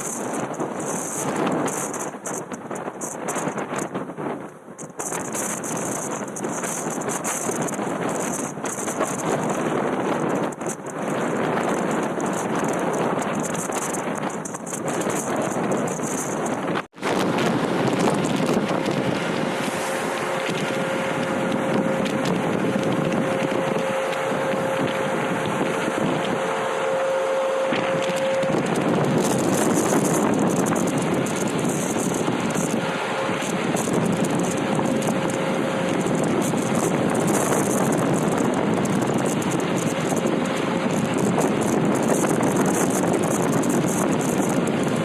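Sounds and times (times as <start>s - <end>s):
sea noise: 0.0s - 45.0s
strong wind: 0.0s - 45.0s
wind buffeting microphone: 0.0s - 45.0s
steady thin tone: 17.6s - 37.7s.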